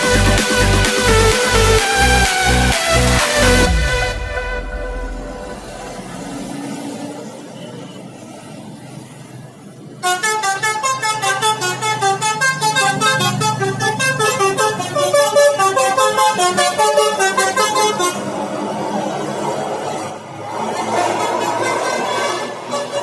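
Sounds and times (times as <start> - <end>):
musical bus horn playing tune: 0.0 - 6.5, 10.0 - 18.8, 21.2 - 23.0
engine rumble: 0.1 - 7.5.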